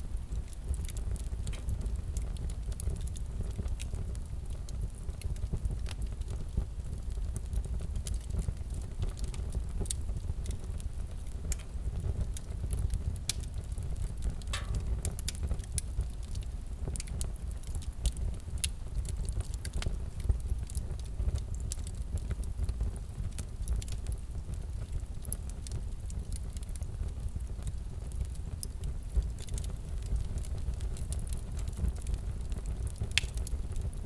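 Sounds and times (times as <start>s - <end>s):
fire crackling and popping: 0.0s - 34.0s
low rumble of flames: 0.0s - 34.0s.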